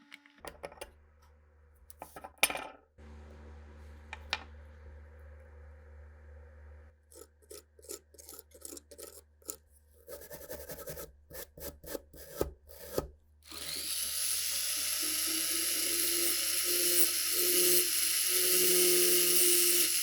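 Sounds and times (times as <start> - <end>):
hand scrubbing rusty metal: 7.1 - 12.3.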